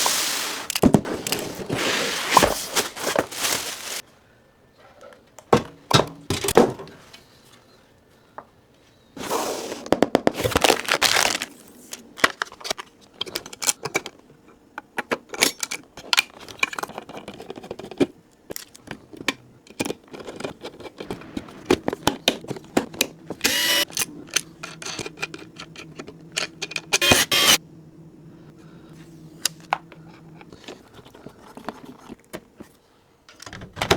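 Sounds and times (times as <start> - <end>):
faint steady hum: 10.5 - 33.9
computer parts clicking and scraping: 22.1 - 27.6.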